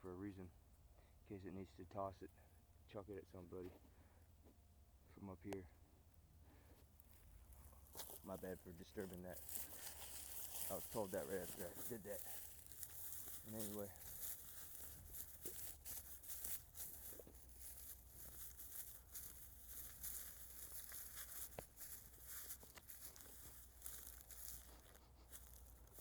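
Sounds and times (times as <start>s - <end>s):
faint crackling and rustling: 6.4s - 26.0s.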